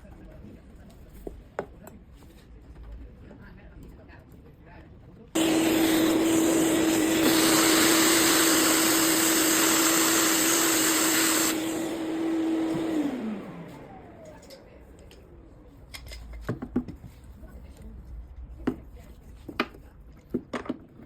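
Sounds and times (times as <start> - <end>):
motor winding down: 5.4 - 14.5
electric fan motor humming: 5.4 - 15.5.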